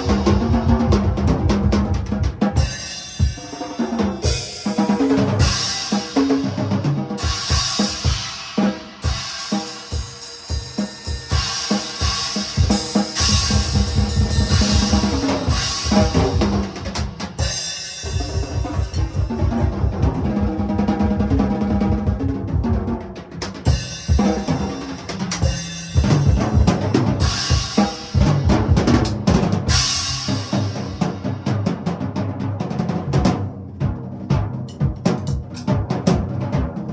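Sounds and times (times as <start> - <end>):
cymbals washing: 0.0 - 1.0, 2.2 - 19.9, 23.5 - 31.5
drum kit rolls: 0.0 - 36.9.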